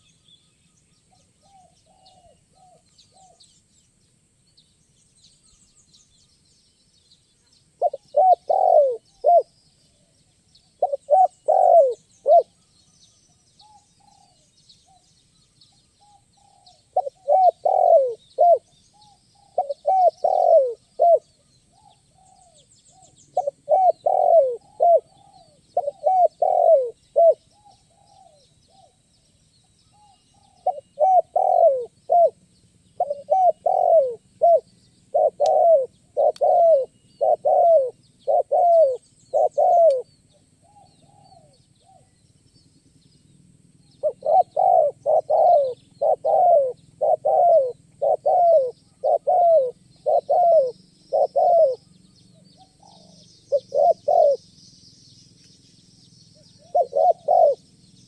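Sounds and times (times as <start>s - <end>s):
small birds chirping: 0.0s - 58.0s
dove cooing: 1.4s - 3.4s, 7.8s - 9.6s, 10.8s - 12.6s, 16.0s - 29.0s, 30.0s - 32.4s, 33.0s - 42.2s, 43.9s - 54.4s, 56.4s - 57.7s.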